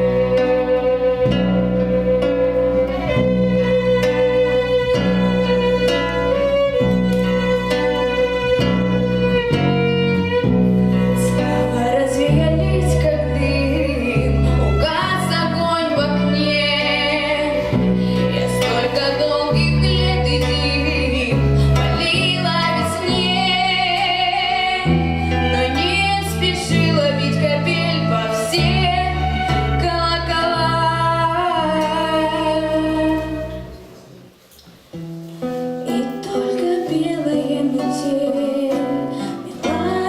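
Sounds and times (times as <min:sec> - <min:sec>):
instrumental accompaniment with bass: 0:00.0 - 0:40.0
woman singing pop song: 0:11.2 - 0:33.5, 0:35.9 - 0:40.0.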